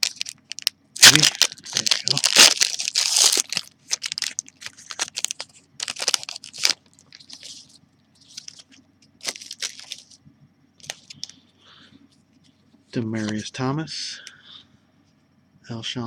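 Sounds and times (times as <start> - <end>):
wrapper crinkling and tearing: 0.0 - 10.2, 10.8 - 11.3.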